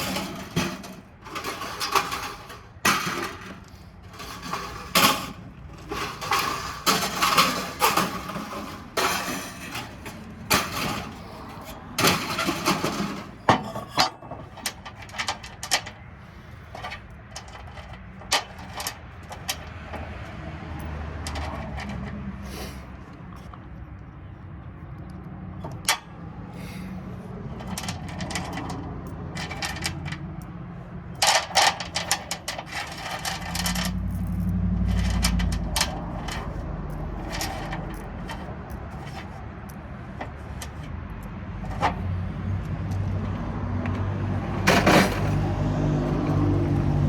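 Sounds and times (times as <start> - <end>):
metal clanking and knocking: 0.0 - 22.3, 25.5 - 26.2, 27.3 - 47.0.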